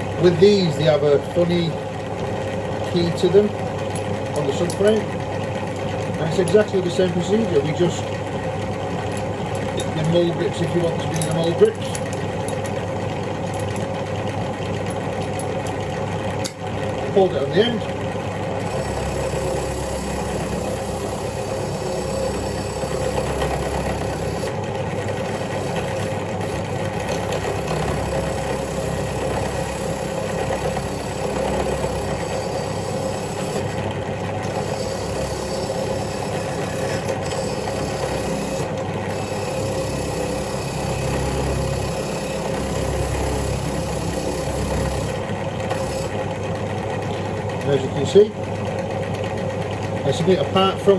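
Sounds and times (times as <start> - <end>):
power tool motor humming: 18.5 - 46.4.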